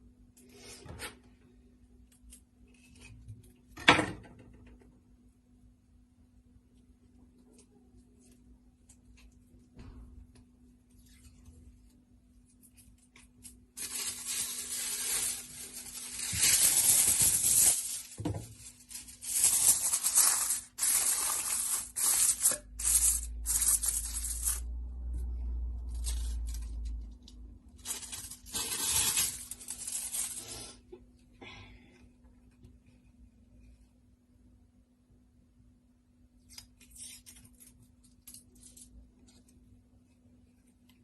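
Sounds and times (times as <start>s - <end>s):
wrapping material crinkling: 12.5s - 30.8s.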